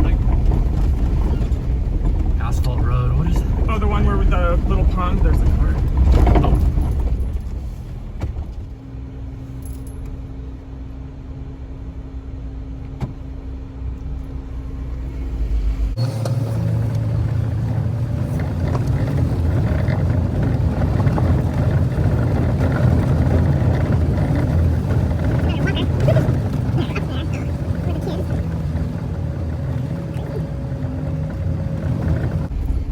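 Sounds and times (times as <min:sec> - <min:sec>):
tyres on gravel: 0:00.0 - 0:08.9, 0:16.0 - 0:32.9
vehicle engine rumble: 0:00.0 - 0:32.9.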